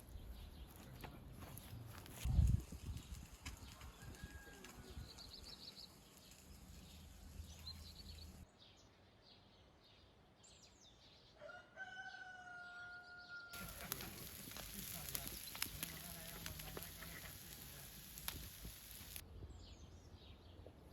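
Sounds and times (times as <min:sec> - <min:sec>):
small birds chirping: 0:00.0 - 0:11.0, 0:13.5 - 0:20.6
rooster crowing: 0:03.8 - 0:05.2, 0:11.4 - 0:14.5.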